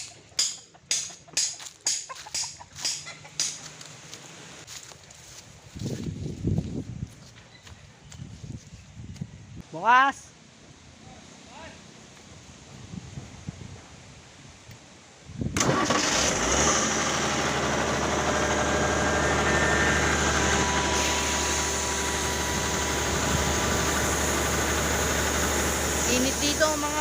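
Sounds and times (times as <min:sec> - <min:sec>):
air compressor engine running: 0:15.6 - 0:27.0.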